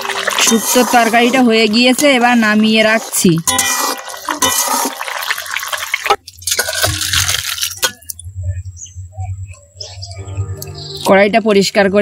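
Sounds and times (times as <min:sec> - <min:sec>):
wok being scrubbed: 0:00.0 - 0:07.9
water splashing and running: 0:00.0 - 0:08.0.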